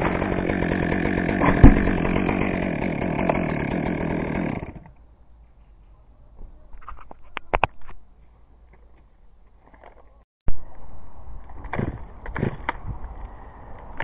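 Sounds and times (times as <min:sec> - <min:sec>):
chainsaw engine running: 0:00.0 - 0:04.9.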